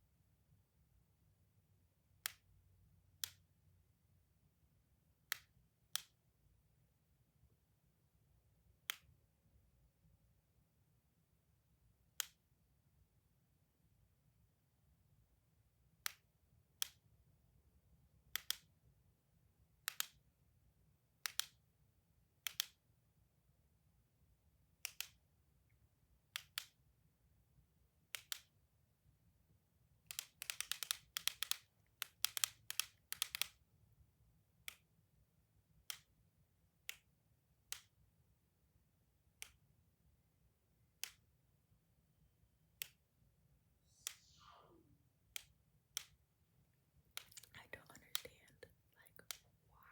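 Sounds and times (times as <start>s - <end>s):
sharp toy clicks: 30.1s - 33.6s.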